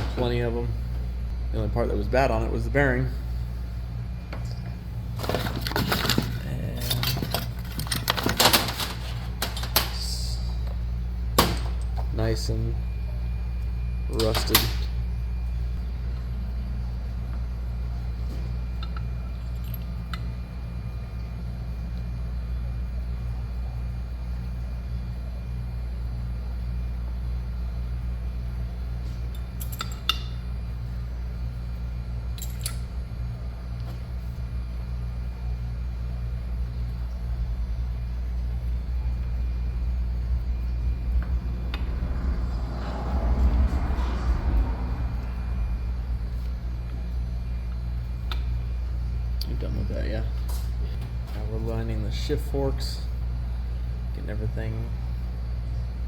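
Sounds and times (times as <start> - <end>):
steady low hum: 0.0 - 56.0
metal parts clinking: 5.2 - 10.0, 32.4 - 32.8.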